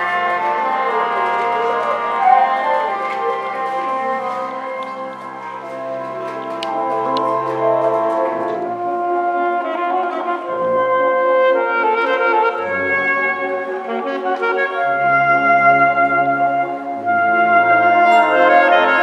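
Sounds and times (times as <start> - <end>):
saxophones playing held chords: 0.0 - 19.0.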